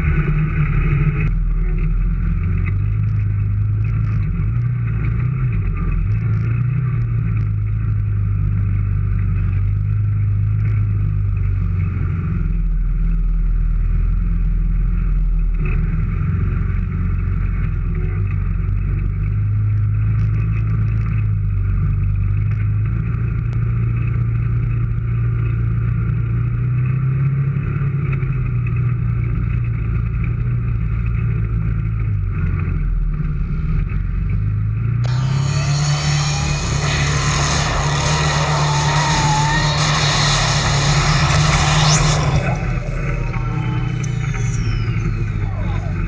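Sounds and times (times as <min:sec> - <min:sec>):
off-road vehicle engine running: 0:00.0 - 0:46.0.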